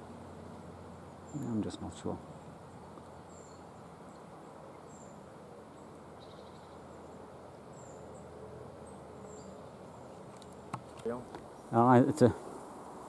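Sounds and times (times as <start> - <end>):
low hiss of open air: 0.0 - 13.0
high bird chirps: 5.8 - 8.3.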